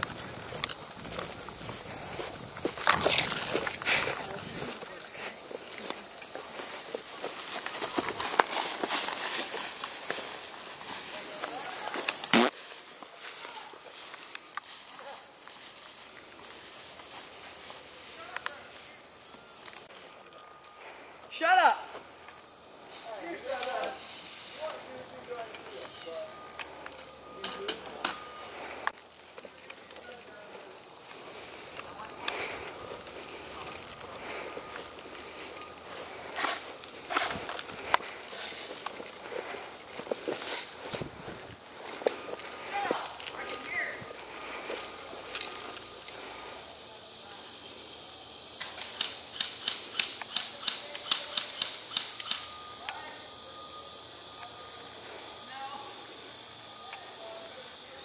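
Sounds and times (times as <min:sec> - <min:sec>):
insect chorus buzzing: 0:00.0 - 0:58.0
sharp clicks: 0:48.6 - 0:52.5.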